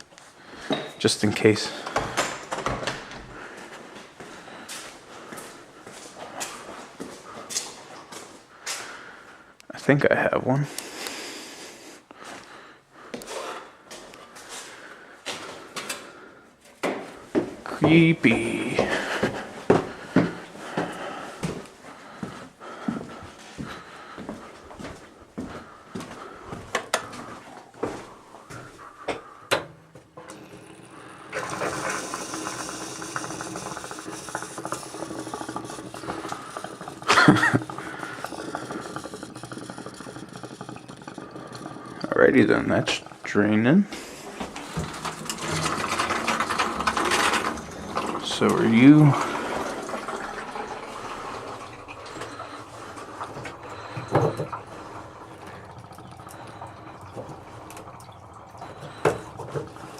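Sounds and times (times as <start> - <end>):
water rushing from plumbing: 0.0 - 9.4, 17.2 - 59.9
objects shifted and scraped: 44.0 - 48.3.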